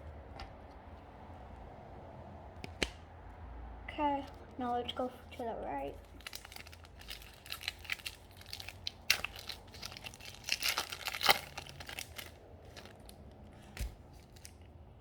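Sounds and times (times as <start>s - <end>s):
plastic foil wrapper crinkling: 5.9s - 14.6s.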